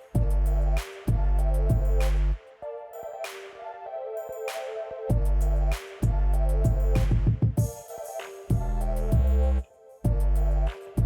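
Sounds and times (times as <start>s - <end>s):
electronic music: 0.0s - 11.0s
heavy bass note: 0.2s - 2.4s, 5.1s - 7.1s, 8.5s - 10.7s.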